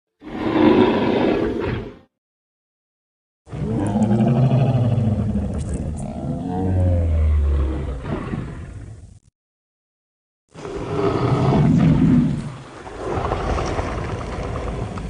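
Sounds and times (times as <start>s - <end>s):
dinosaur roaring: 0.2s - 1.8s, 3.5s - 8.7s, 10.6s - 12.4s.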